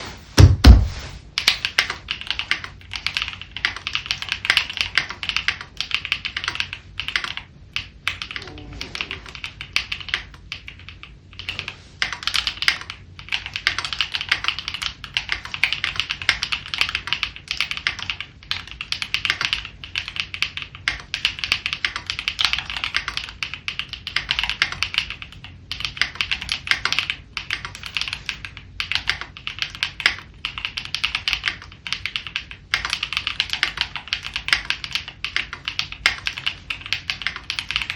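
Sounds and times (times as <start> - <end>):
loud low thump: 0.1 - 1.2
mechanical keyboard typing: 1.4 - 37.9.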